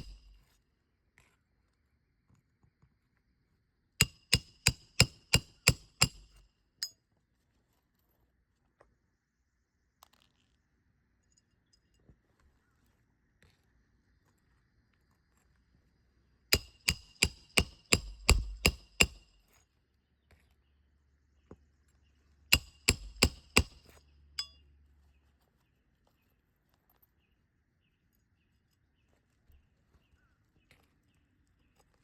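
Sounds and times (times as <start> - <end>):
hammer striking metal: 0.0 - 0.4, 4.0 - 6.4, 16.6 - 19.2, 22.5 - 23.8.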